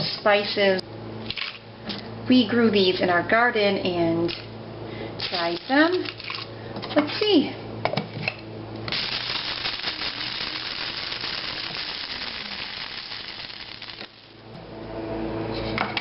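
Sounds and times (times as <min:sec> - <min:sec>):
electric coffee grinder running: 0:08.9 - 0:14.4.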